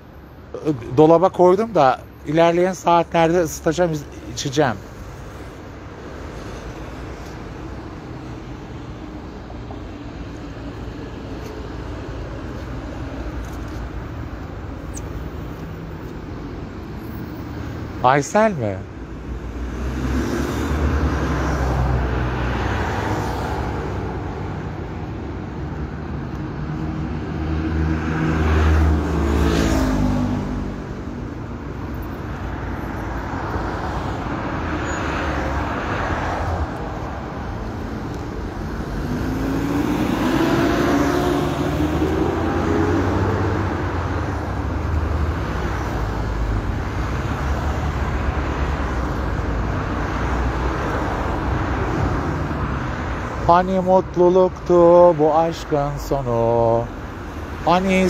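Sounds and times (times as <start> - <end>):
street traffic rumble: 0.0 - 58.0
vehicle passing by: 26.9 - 31.2, 33.6 - 52.7.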